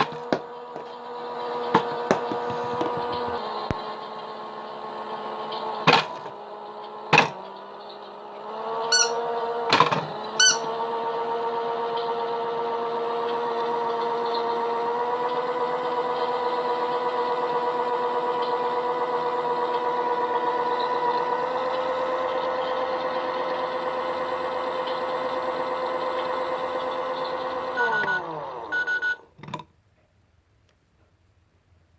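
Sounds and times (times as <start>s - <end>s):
small electric motor humming: 0.0s - 28.4s
short electronic beeps: 8.9s - 9.2s, 10.4s - 10.7s.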